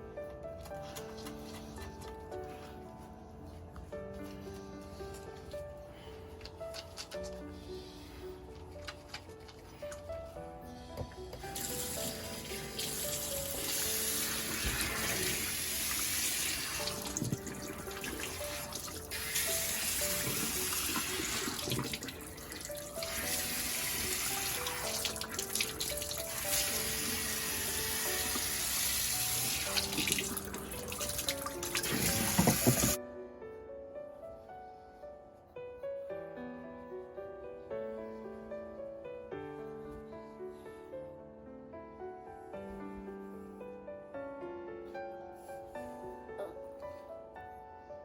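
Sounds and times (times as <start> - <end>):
background music: 0.0 - 48.0
tap water running into sink: 11.4 - 33.0.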